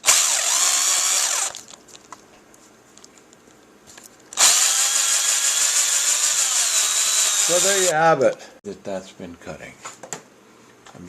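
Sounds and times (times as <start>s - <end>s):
drill hole saw grinding whine: 0.0s - 1.6s, 4.4s - 7.9s.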